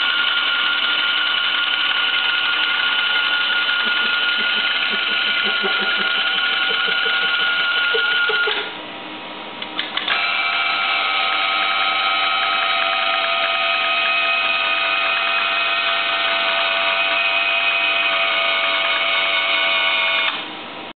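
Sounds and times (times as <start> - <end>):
detector high-pitched whine: 0.0 - 8.8
clicks: 9.6 - 10.2.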